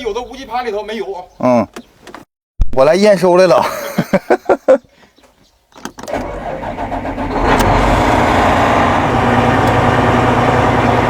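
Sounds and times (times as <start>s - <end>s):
diesel engine starting and running: 6.0s - 11.0s.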